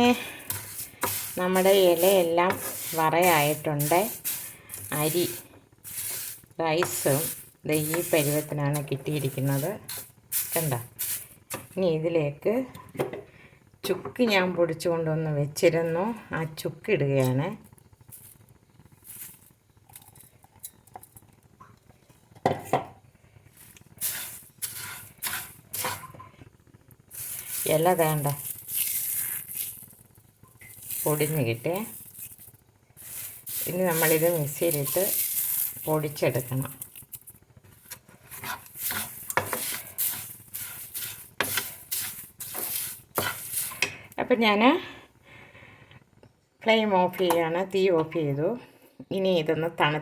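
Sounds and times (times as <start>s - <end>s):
utensil scraping pan: 0.3s - 11.7s, 24.0s - 26.4s, 27.1s - 30.0s, 30.6s - 36.9s, 37.8s - 44.0s.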